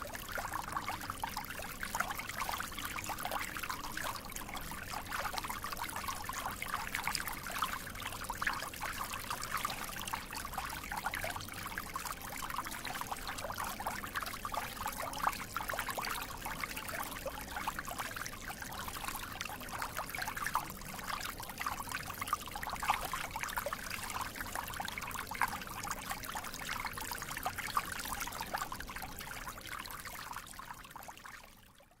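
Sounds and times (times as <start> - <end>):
water flowing and trickling: 0.0 - 31.9.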